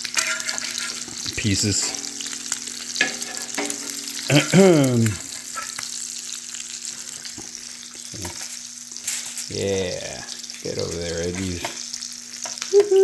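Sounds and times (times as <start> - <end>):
food sizzling on a griddle: 0.0 - 13.0
person humming: 4.3 - 5.2, 12.7 - 13.0.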